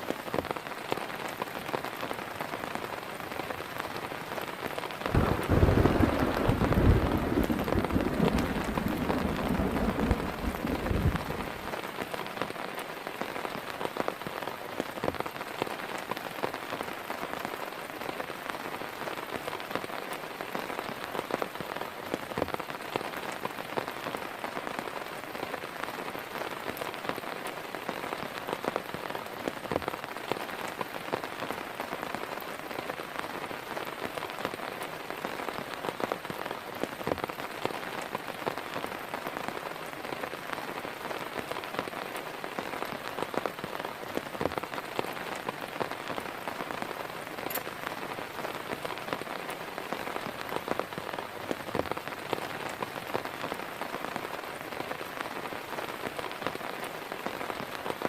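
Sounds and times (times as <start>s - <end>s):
heavy raindrops landing: 0.0s - 24.2s, 25.3s - 58.0s
heavy rain falling: 0.0s - 58.0s.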